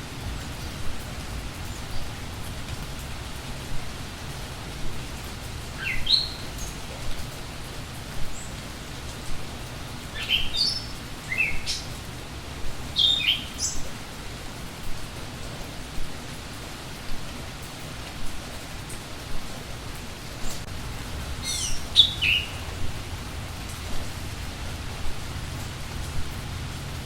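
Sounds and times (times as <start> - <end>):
songbirds chirping: 0.0 - 14.1, 19.6 - 26.9
steady rain: 0.0 - 27.0.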